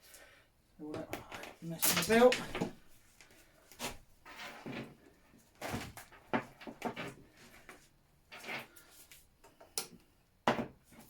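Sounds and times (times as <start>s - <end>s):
knocks and scrapes of plastic and metal: 5.6s - 8.8s.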